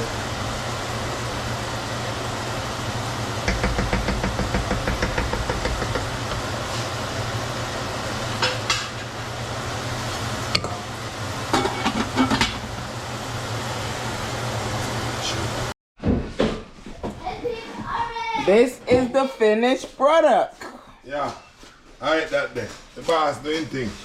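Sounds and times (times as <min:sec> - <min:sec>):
steady background hum: 0:00.0 - 0:15.7
utensils clinking on cookware: 0:11.5 - 0:12.6.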